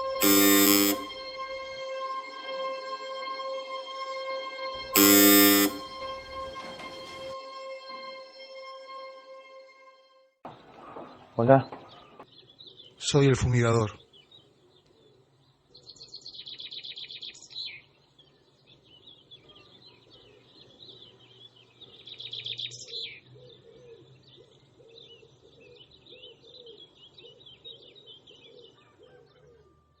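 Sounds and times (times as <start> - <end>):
birds chirping: 10.5 - 29.6
low repeated cooing: 28.6 - 30.0.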